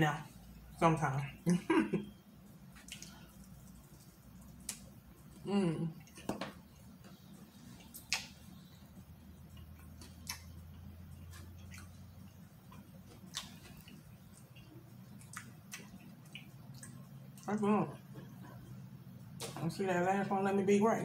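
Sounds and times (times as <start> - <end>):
faint low hum: 0.0 - 21.0
mouth smacks and clicks eating: 2.7 - 17.5.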